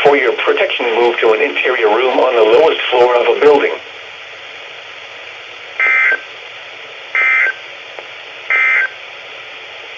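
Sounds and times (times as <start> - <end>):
radio hiss: 0.0 - 9.9
two-tone warbling data bursts: 5.8 - 6.3, 7.2 - 7.6, 8.5 - 9.0.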